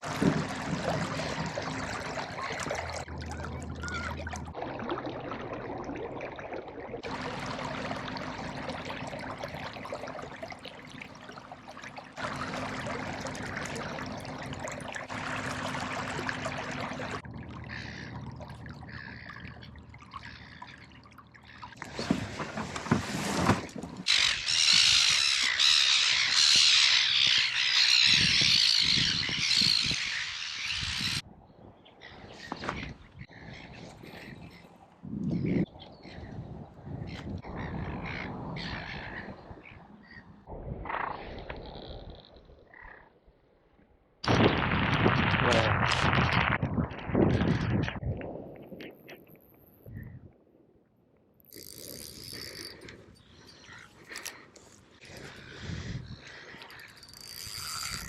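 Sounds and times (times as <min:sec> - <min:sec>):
water washing: 0:00.0 - 0:24.2
wind: 0:00.0 - 0:58.0
chorus of birds calling: 0:07.4 - 0:22.1, 0:24.1 - 0:31.2, 0:51.7 - 0:58.0.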